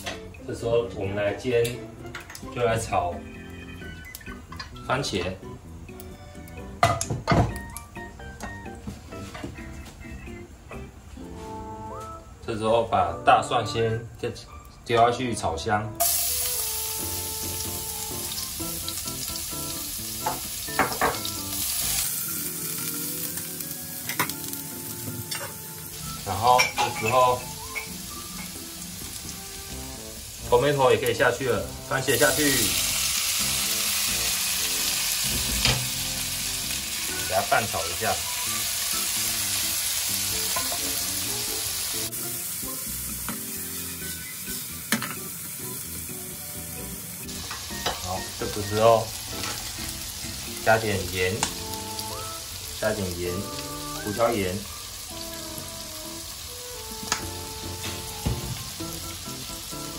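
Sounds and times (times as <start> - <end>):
garlic sizzling in hot oil: 16.0 - 59.9.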